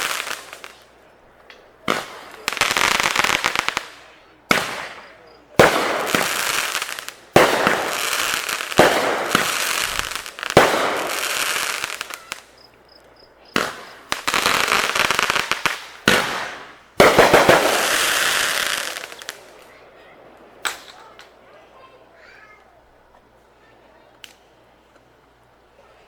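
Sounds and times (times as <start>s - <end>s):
firework bangs: 0.0s - 12.7s, 13.4s - 22.6s
firework crackling: 0.0s - 25.8s.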